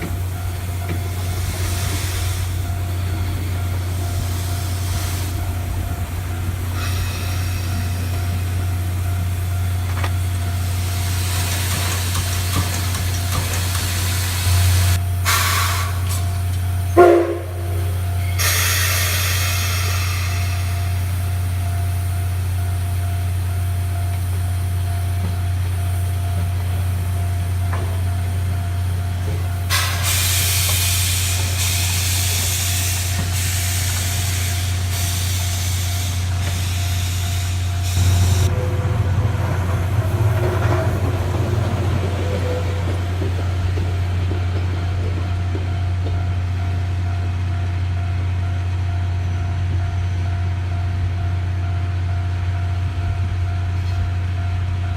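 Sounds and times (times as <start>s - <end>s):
steam locomotive hiss: 0.0s - 44.6s.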